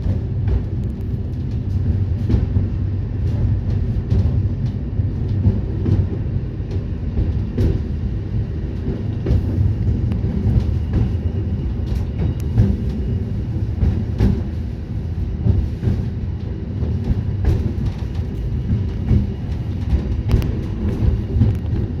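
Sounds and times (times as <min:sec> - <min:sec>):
train rumbling along track: 0:00.0 - 0:22.0
sharp clicks and knocks: 0:20.0 - 0:21.8.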